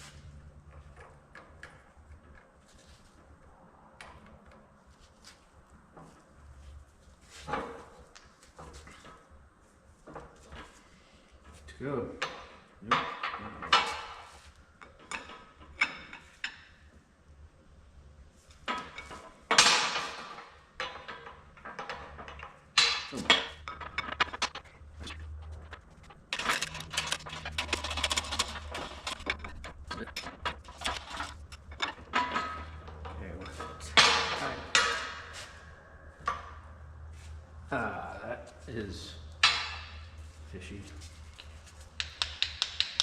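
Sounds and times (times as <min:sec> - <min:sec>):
metal parts clinking and rattling: 0:18.6 - 0:35.2.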